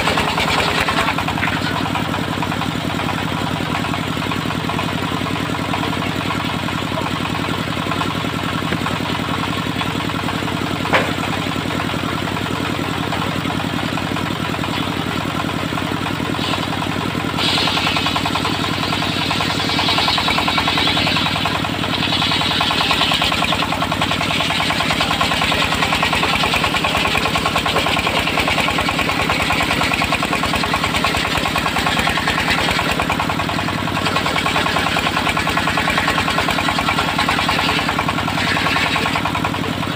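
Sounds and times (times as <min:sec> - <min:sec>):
saw blade cutting timber: 0:00.0 - 0:04.0, 0:10.6 - 0:11.9, 0:15.9 - 0:39.9
sawmill engine running: 0:00.0 - 0:39.9.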